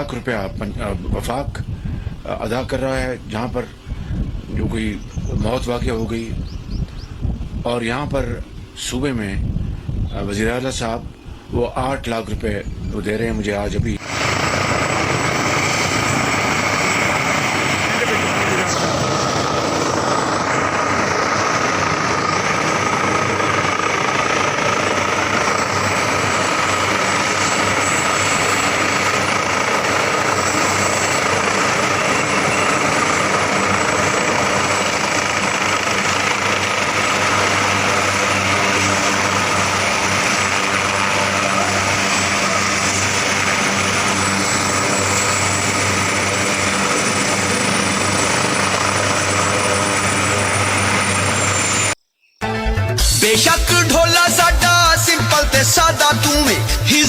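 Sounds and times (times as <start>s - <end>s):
helicopter running: 12.6s - 52.0s
thin high whine: 14.0s - 52.1s.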